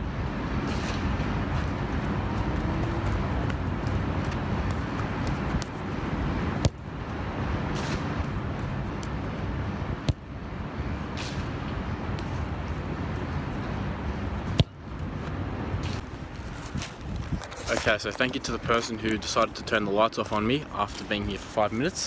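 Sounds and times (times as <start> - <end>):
low outdoor rumble: 0.0 - 16.8.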